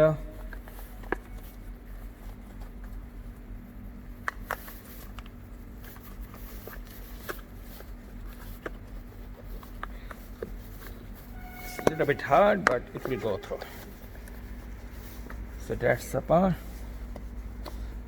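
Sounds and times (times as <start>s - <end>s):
steady low hum: 0.0s - 18.0s
light clicks and taps of plastic parts: 4.2s - 11.0s, 16.7s - 18.0s.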